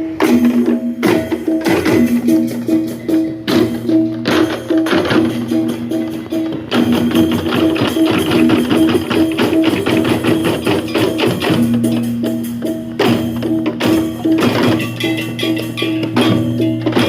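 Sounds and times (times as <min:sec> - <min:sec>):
bamboo percussion ensemble: 0:00.0 - 0:17.0
held pitched tones: 0:00.0 - 0:17.0.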